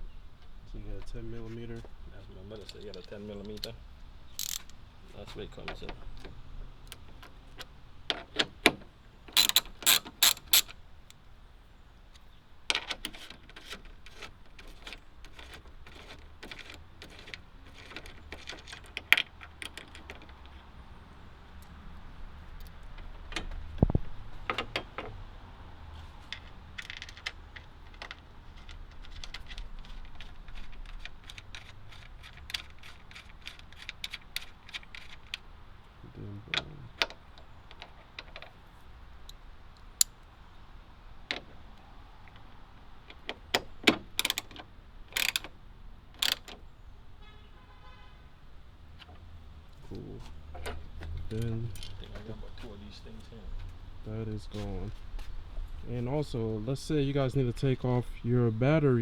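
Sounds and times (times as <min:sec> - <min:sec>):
ratchet wrench clicking: 0:04.4 - 0:04.8, 0:09.4 - 0:10.8, 0:43.1 - 0:44.5, 0:45.1 - 0:45.5, 0:46.2 - 0:46.6.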